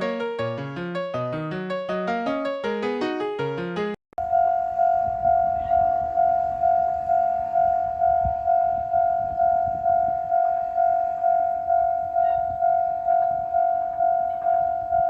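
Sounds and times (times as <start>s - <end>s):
level crossing warning bell: 4.2s - 15.0s.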